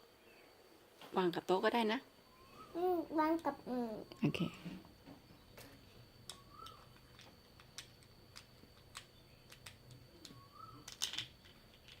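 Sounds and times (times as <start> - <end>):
plastic lego pieces clicking: 6.6 - 12.0.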